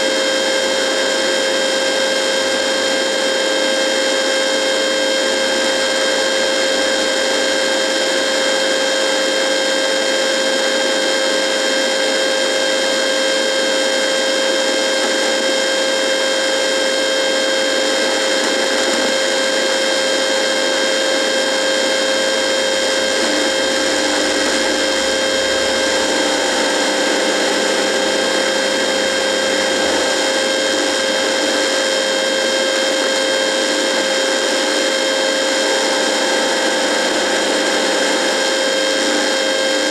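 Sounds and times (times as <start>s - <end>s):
radio buzzing: 17.3s - 39.9s.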